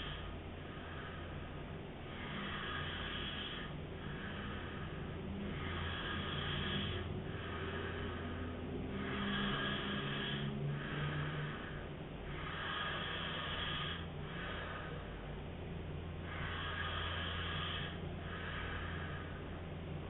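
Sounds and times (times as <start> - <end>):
man snoring: 0.0 - 15.3, 16.2 - 19.6
steady low hum: 0.0 - 20.0.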